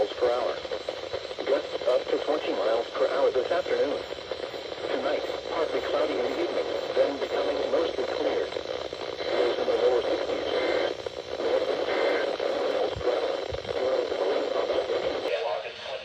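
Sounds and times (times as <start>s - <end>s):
muffled voice over radio: 0.0s - 16.0s
static hiss: 0.0s - 16.0s.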